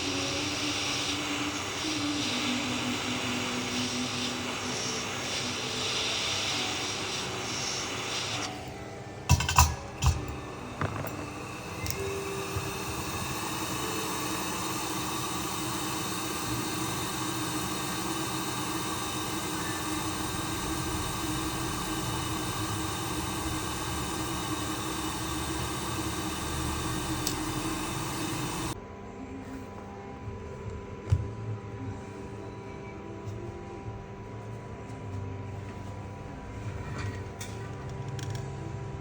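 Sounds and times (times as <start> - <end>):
hot air blower hissing: 0.0 - 28.8.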